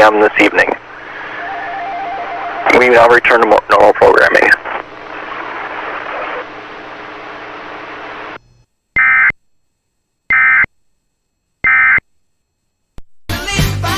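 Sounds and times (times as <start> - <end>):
radio hiss: 0.0 - 8.4
low hum: 0.7 - 8.9.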